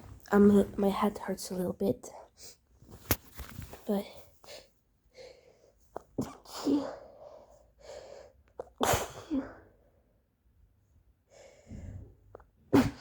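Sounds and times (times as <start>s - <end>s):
woman sneezing: 8.8s - 9.6s, 12.7s - 13.0s.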